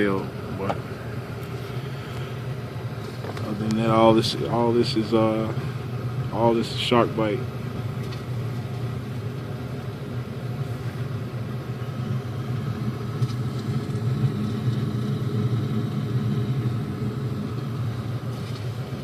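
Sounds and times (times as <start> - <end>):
low mechanical rumble: 0.0 - 19.0.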